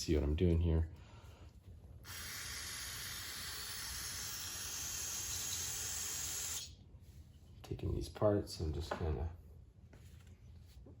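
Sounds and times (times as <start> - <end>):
aerosol spray hissing: 2.1 - 6.8.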